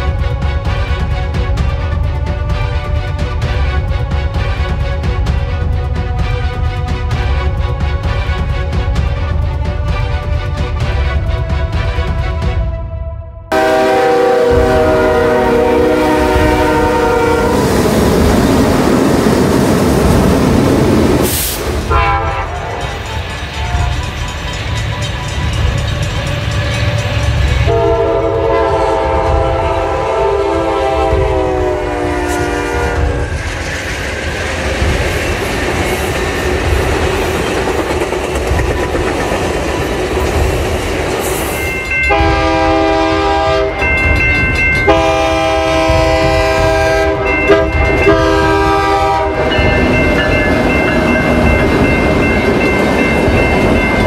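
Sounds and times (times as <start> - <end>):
passing train rumble: 0.0 - 54.0
locomotive air horn blasts: 13.5 - 17.8, 21.9 - 22.9, 27.7 - 33.2, 42.1 - 43.9, 44.9 - 49.8.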